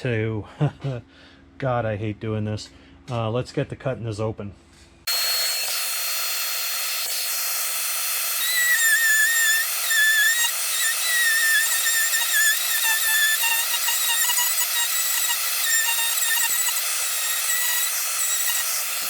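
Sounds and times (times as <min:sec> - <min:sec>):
rotary tool cutting: 0:05.1 - 0:19.0.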